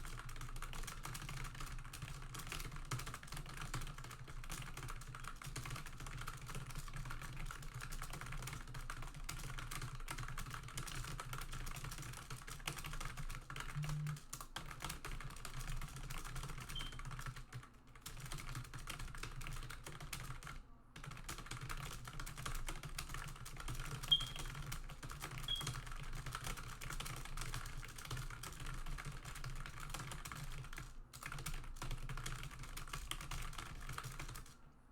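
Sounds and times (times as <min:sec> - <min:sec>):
fast keyboard typing: 0:00.0 - 0:34.6.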